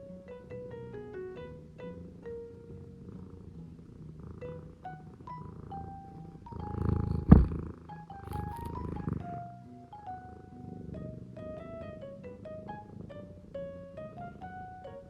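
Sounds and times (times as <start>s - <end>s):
cat purring: 0.0s - 15.0s
sharp knock: 7.2s - 7.6s.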